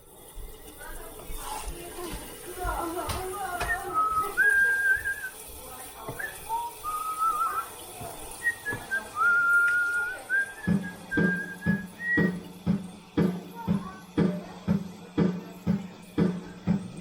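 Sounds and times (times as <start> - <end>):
thin whistling tone: 3.6 - 12.6.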